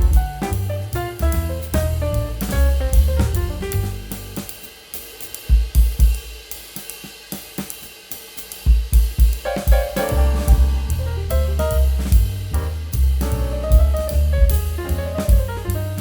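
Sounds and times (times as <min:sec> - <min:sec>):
bass drum hits: 0:00.0 - 0:04.5, 0:09.6 - 0:16.0
drum kit beat on hi-hat and cymbals: 0:00.0 - 0:16.0.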